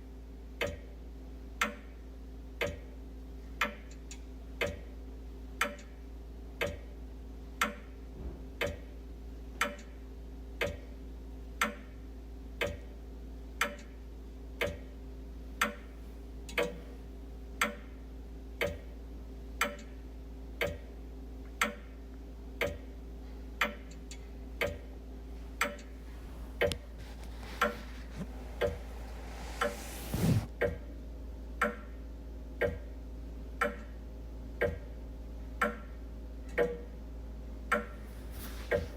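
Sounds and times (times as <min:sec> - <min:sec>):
wall clock ticking: 0:02.6 - 0:02.8, 0:08.6 - 0:08.9, 0:10.6 - 0:10.9, 0:12.6 - 0:12.9, 0:13.6 - 0:14.0, 0:14.6 - 0:14.9, 0:19.6 - 0:20.0, 0:20.6 - 0:20.9, 0:22.6 - 0:22.9, 0:23.6 - 0:24.9
rustling ending in a crunch: 0:26.1 - 0:30.5, 0:38.0 - 0:38.9.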